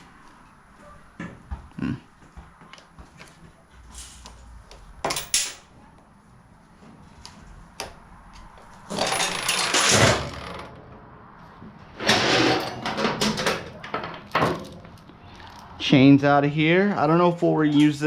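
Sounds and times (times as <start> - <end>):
metal chain clinking and rattling: 5.0 - 5.7, 8.9 - 10.7.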